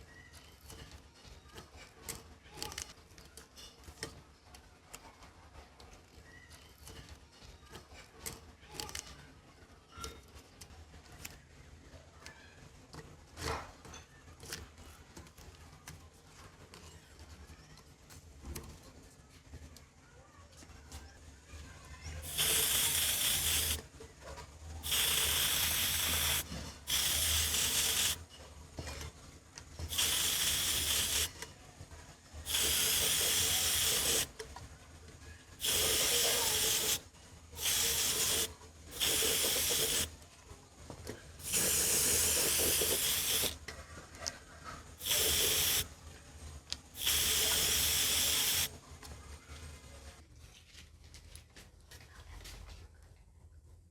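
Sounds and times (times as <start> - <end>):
spray hissing in short bursts: 22.2 - 23.8, 24.8 - 28.2, 29.9 - 31.4, 32.4 - 34.3, 35.6 - 37.0, 37.6 - 40.1, 41.4 - 43.6, 45.0 - 45.9, 47.0 - 48.7.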